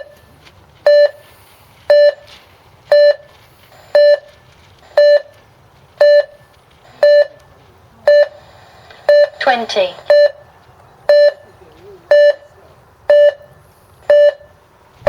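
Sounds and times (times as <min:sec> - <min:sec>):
race start timer beeping: 0:02.9 - 0:03.3, 0:03.9 - 0:04.3, 0:04.9 - 0:05.4, 0:06.0 - 0:06.4, 0:07.0 - 0:07.4, 0:08.1 - 0:08.4, 0:09.1 - 0:10.4, 0:11.1 - 0:11.5, 0:12.1 - 0:12.5, 0:13.1 - 0:14.6.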